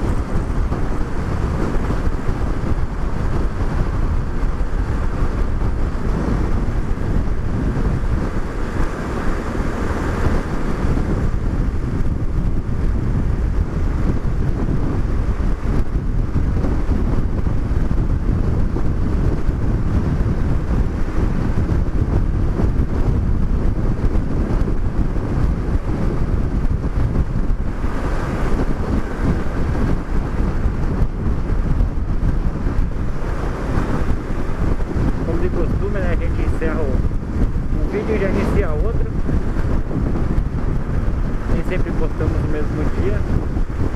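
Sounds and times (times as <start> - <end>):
road noise: 0.0 - 43.9
wind buffeting microphone: 0.0 - 43.9.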